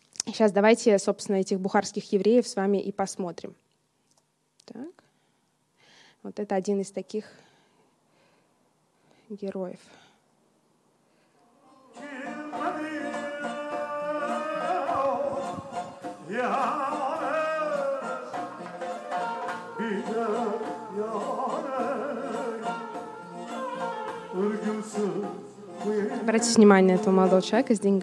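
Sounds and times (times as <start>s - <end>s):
person singing ornamented lines: 11.6s - 27.5s
accompanying instruments: 11.6s - 28.0s.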